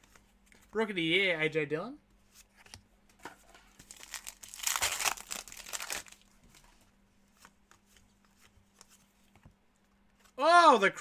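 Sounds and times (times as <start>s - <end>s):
plastic wrapper crinkling: 3.8s - 6.6s.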